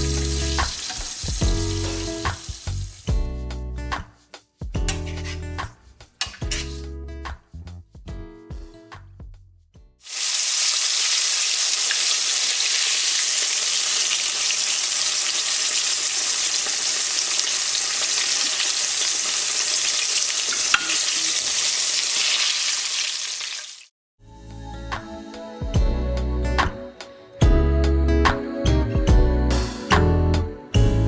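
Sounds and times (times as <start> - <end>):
food sizzling in a pan: 0.0 - 3.1, 10.0 - 23.9.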